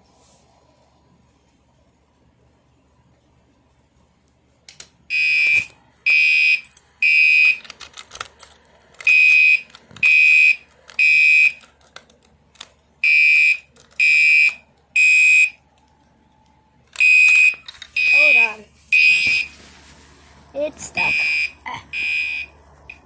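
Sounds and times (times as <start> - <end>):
fire alarm horn beeps: 5.1 - 7.6, 9.0 - 11.6, 13.0 - 15.6, 17.0 - 19.6, 21.0 - 23.0.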